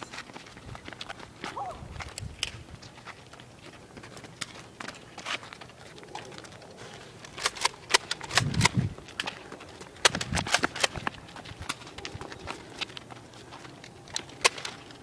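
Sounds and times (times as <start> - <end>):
toy blasters snapping and clicking: 7.2 - 9.4, 10.0 - 12.2, 14.1 - 14.9.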